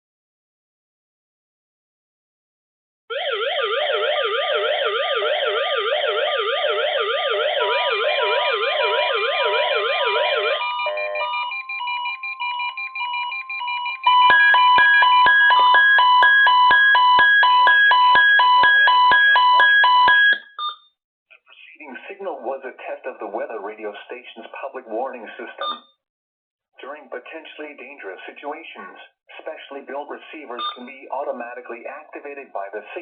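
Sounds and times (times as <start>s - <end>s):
warbling siren-like tone: 3.1s - 12.8s
alarm beeping: 3.1s - 20.9s, 30.6s - 30.9s.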